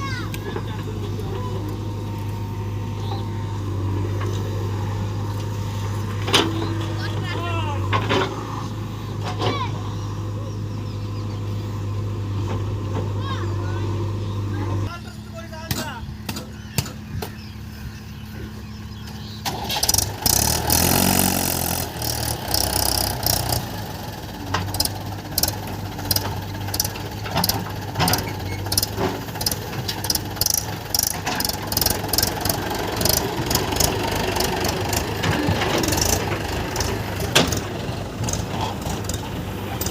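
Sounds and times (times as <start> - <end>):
heavy diesel engine revving: 19.0 - 39.9
sharp clicks and knocks: 24.5 - 39.9.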